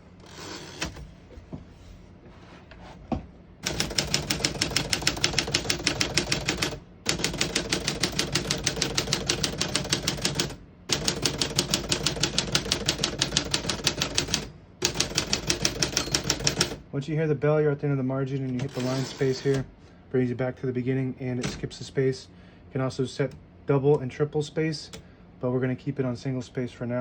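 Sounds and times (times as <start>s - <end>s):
manual typewriter typing: 0.2s - 1.0s, 3.6s - 16.8s, 18.5s - 19.7s.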